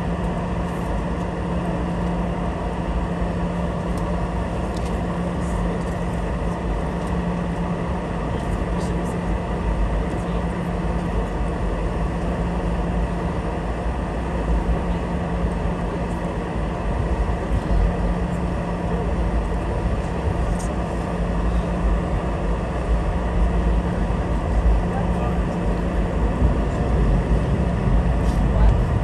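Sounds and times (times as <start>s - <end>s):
jet engines idling hum: 0.0s - 29.0s
airframe and wheels rumble: 16.9s - 29.0s.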